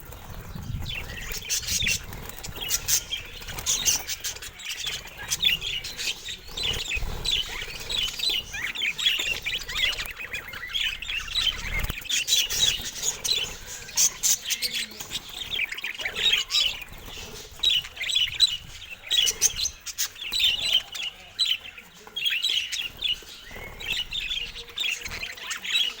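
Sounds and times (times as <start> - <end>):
budgerigars chirping: 0.0 - 26.0.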